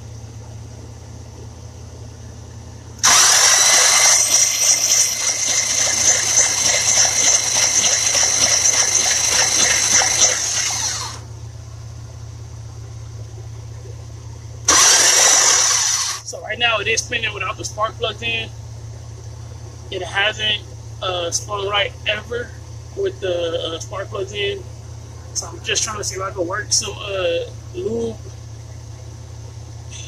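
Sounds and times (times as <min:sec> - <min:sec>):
starter motor cranking engine: 0:02.7 - 0:11.4, 0:14.6 - 0:16.4.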